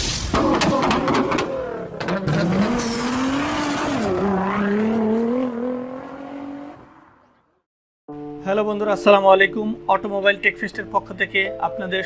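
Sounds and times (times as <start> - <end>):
car engine revving: 1.0 - 7.4.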